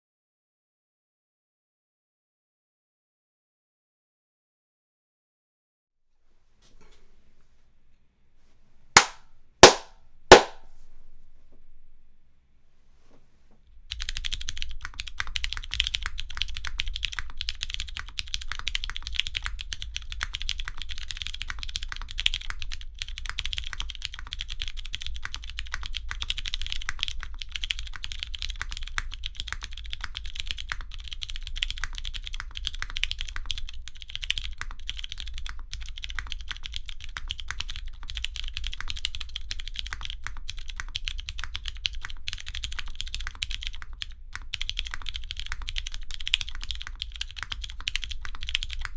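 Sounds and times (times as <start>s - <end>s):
fast mechanical keyboard typing: 13.9s - 48.9s.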